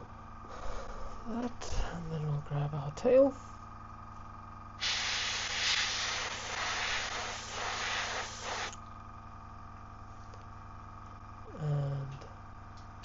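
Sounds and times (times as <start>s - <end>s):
airbrush spraying hiss: 4.8s - 8.8s.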